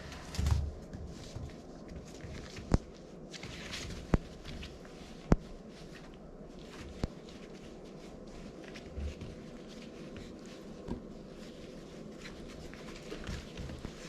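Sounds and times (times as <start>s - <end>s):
puppies rustling on bedding: 0.0s - 14.0s.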